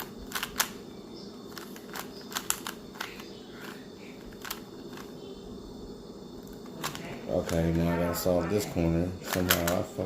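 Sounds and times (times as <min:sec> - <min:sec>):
puzzle cube clicking: 0:00.0 - 0:00.8, 0:01.5 - 0:05.1, 0:09.3 - 0:09.8
low background hum: 0:00.0 - 0:10.0.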